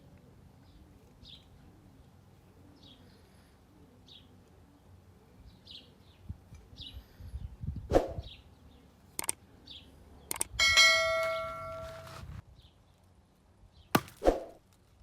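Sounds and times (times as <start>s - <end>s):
machete blade clanging: 14.0s - 14.2s
sharp knocks: 14.0s - 14.3s.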